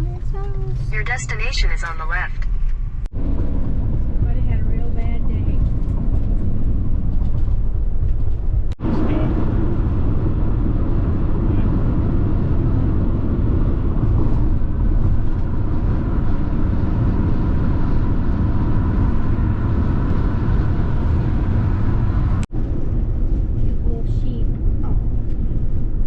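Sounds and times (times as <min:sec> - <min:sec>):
car road and engine noise: 0:00.0 - 0:26.0.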